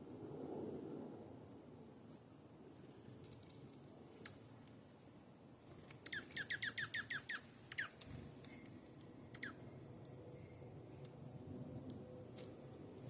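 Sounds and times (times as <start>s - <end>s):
songbird chirping: 6.0s - 13.0s.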